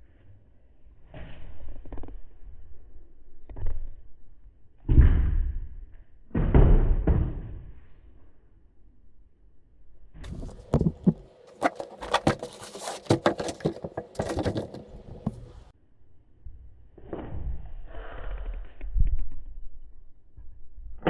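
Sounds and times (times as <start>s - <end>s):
packaging rustling: 10.3s - 15.6s
unboxing clicks and knocks: 10.3s - 15.6s.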